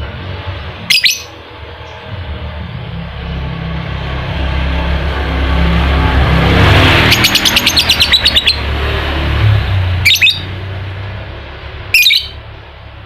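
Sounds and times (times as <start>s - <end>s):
lovebird sharp calls: 0.9s - 1.3s, 7.1s - 8.6s, 10.0s - 10.5s, 12.0s - 12.4s
lovebird shrill chirps: 0.9s - 1.3s, 7.1s - 8.6s, 10.0s - 10.5s, 11.9s - 12.4s.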